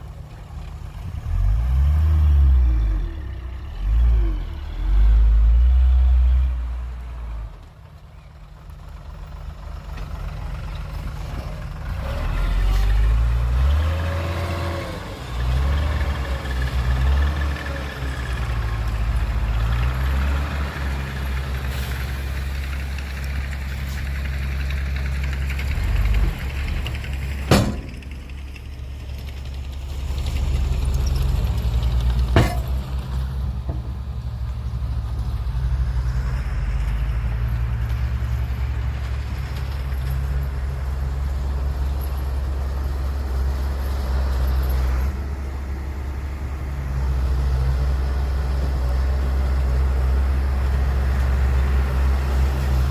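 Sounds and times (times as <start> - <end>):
heavy diesel engine rumbling: 0.0 - 52.9
sharp knocks: 27.5 - 28.4, 32.4 - 32.8.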